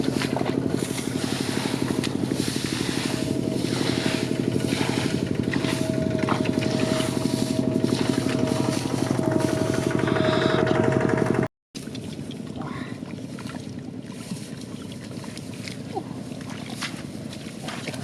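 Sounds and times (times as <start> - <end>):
small engine puttering: 0.0 - 13.6.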